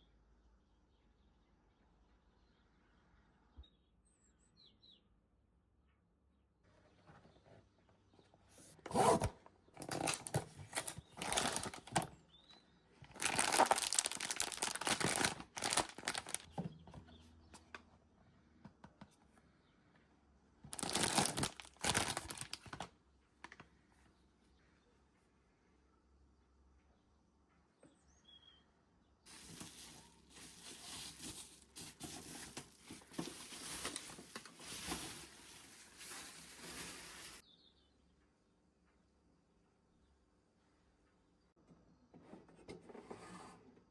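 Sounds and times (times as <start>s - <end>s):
packaging tearing and crinkling: 8.9s - 12.1s, 13.1s - 16.5s, 20.7s - 22.9s, 29.3s - 37.4s.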